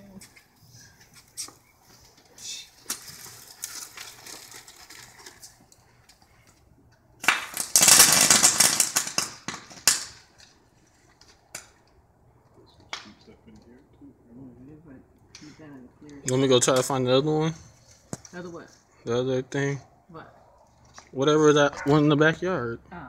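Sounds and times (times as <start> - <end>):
firework crackling and popping: 0.2 - 6.6, 7.2 - 12.0
firework hissing: 7.2 - 10.3.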